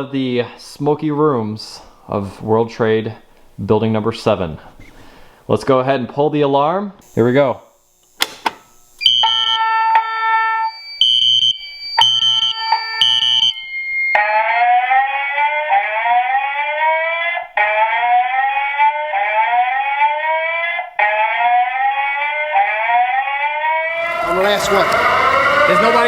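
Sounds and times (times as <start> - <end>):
alarm chime strikes: 9.0 - 14.8
alarm whoop rising tone: 9.0 - 26.0.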